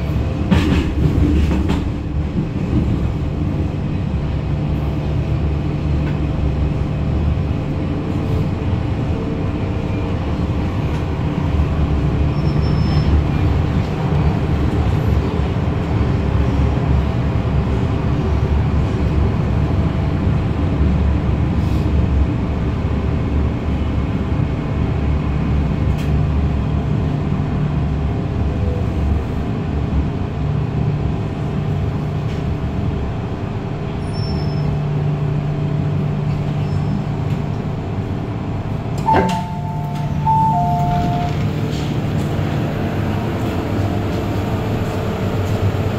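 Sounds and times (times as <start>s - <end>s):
train wheels rumbling on rails: 0.0s - 45.9s.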